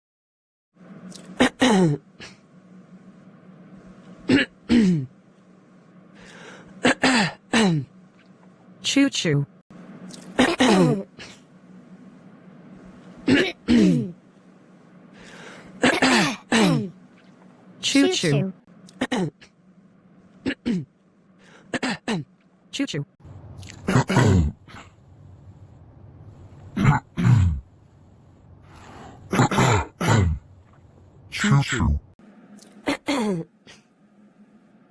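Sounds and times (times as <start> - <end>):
faint steady hum: 0.8 - 34.9
person clearing throat: 1.2 - 2.4, 4.3 - 5.1, 6.8 - 7.9, 10.2 - 11.4, 13.2 - 14.2, 15.8 - 17.0, 19.0 - 19.5, 20.4 - 20.9, 21.7 - 22.3, 23.7 - 24.9, 26.8 - 27.6, 29.3 - 30.4, 32.8 - 33.9.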